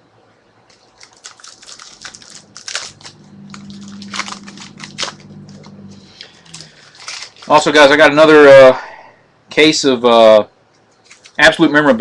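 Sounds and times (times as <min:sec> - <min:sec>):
low steady hum: 0:00.0 - 0:12.0
foil wrappers crinkling: 0:00.7 - 0:08.0, 0:10.9 - 0:11.6.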